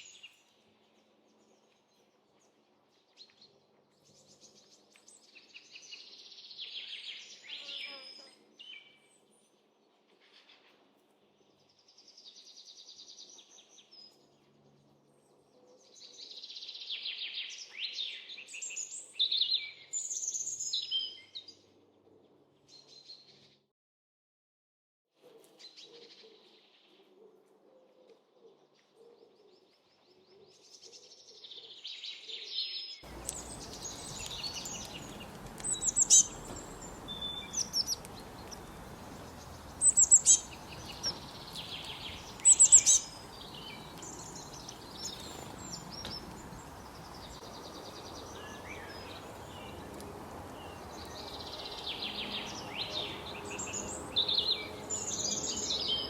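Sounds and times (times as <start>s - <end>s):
small birds chirping: 28.9s - 56.0s
outdoor background hiss: 33.0s - 56.0s.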